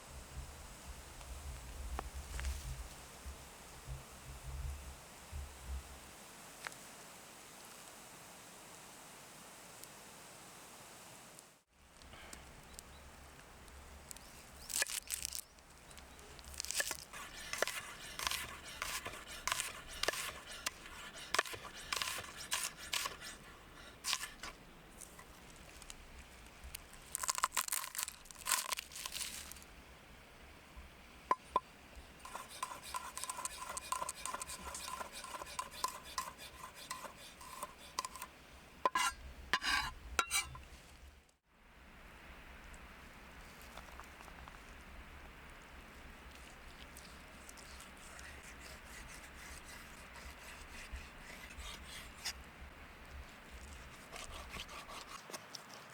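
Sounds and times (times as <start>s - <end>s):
metal utensil scraping a pan: 16.7s - 24.6s, 32.2s - 38.3s, 38.9s - 40.6s.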